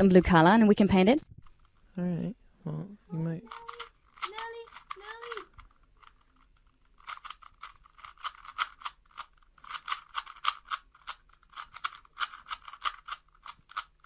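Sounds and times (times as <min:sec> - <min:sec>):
puzzle cube clacking clicks: 0:03.4 - 0:14.0.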